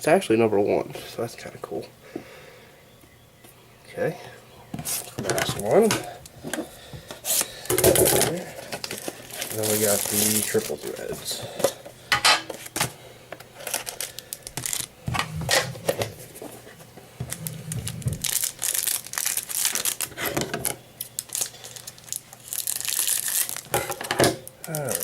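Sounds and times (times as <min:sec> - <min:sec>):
wrapper tearing and crinkling: 0:07.3 - 0:11.4, 0:13.6 - 0:14.9, 0:17.3 - 0:25.0.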